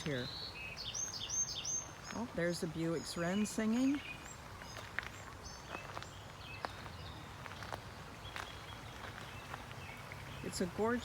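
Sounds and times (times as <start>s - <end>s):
wren singing: 0.0s - 4.2s
footsteps on a path: 0.8s - 10.8s.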